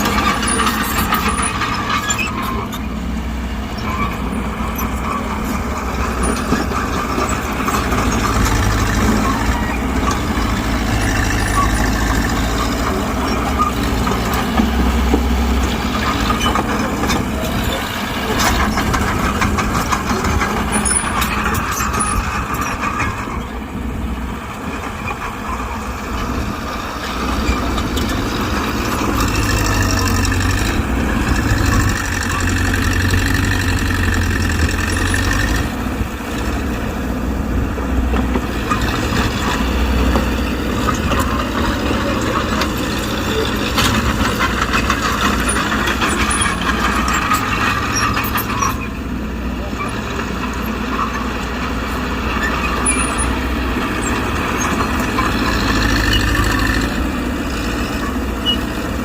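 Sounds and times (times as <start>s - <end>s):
bulldozer diesel engine working: 0.0s - 59.0s.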